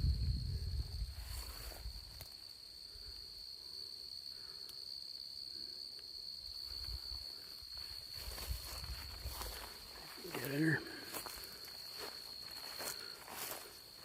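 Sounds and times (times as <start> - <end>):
low rumble on microphone: 0.0 - 2.1
high-pitched insect drone: 0.0 - 14.0.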